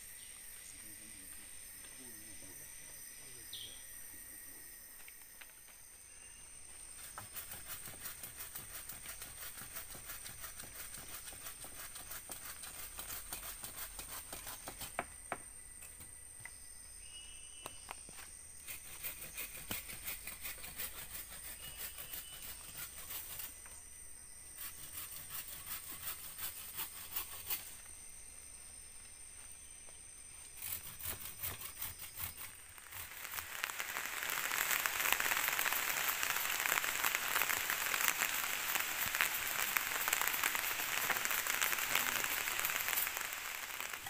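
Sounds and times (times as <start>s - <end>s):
insects fast pulsing: 0.0s - 44.0s
insects whining: 0.0s - 44.0s.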